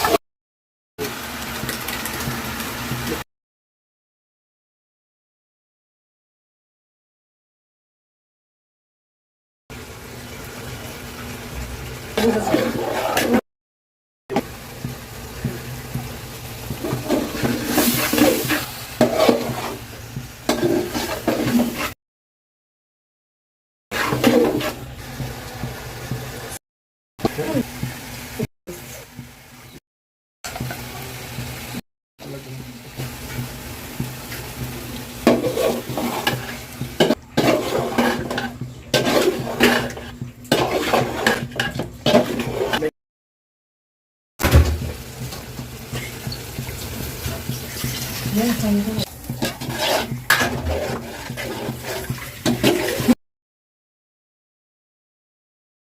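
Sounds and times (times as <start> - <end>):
food sizzling: 1.0 - 3.2, 9.7 - 13.4, 14.3 - 22.0, 23.9 - 26.6, 27.2 - 29.8, 30.4 - 42.9, 44.4 - 53.2
spoon scraping a pot: 12.2 - 13.4, 16.7 - 19.9, 20.5 - 22.0, 24.0 - 24.9, 35.2 - 42.9, 45.9 - 53.2.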